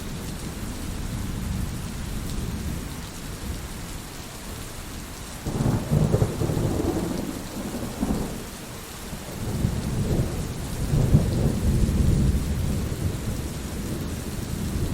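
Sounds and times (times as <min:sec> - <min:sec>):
steady rain: 0:00.0 - 0:14.9
thunder rumbling: 0:05.4 - 0:14.9.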